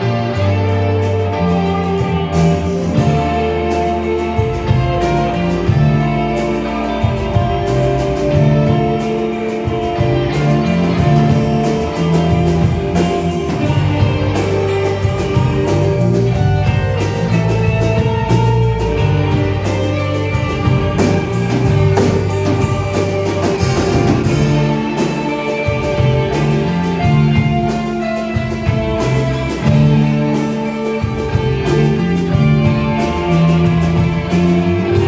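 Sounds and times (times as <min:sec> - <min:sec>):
bass line: 0:00.0 - 0:35.0
guitar: 0:00.0 - 0:35.0
steady drum beat: 0:00.0 - 0:35.0.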